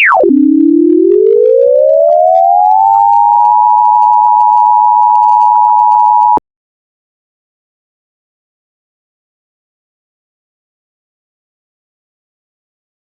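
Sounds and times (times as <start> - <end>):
two-tone electronic alert signal: 0.0 - 6.4.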